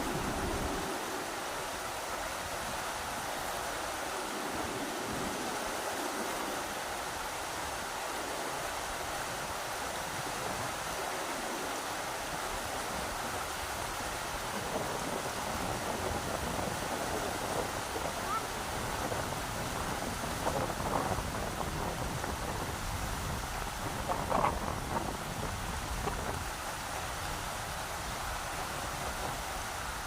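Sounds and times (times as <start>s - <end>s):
rushing river water: 0.0s - 30.0s.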